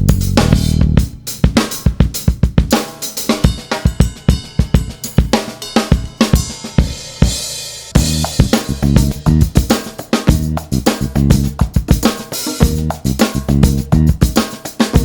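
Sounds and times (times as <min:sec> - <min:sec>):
bass and guitar: 0:00.0 - 0:01.1, 0:08.0 - 0:09.7, 0:10.3 - 0:11.6, 0:12.6 - 0:14.3
drum kit beat: 0:00.0 - 0:15.0.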